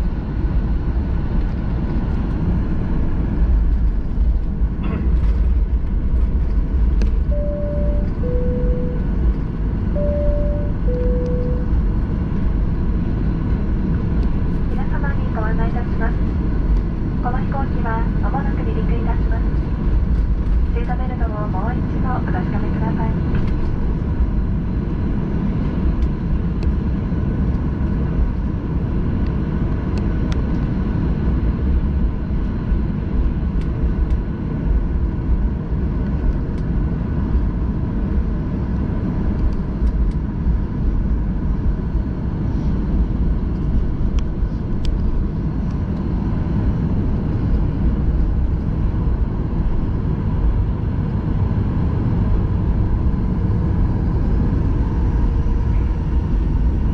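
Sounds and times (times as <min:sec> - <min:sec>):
jet engine and airflow rumble: 0:00.0 - 0:56.9
faint steady hum: 0:07.0 - 0:13.2.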